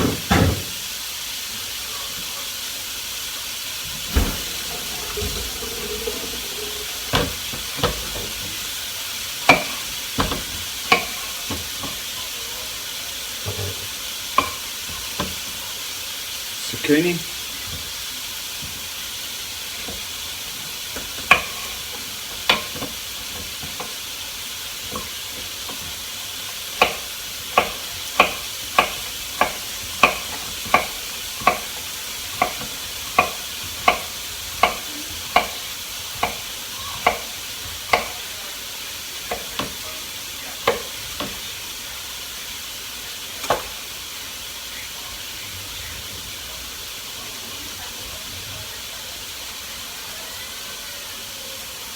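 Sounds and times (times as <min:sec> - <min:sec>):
chicken sizzling in a frying pan: 0:00.0 - 0:51.9.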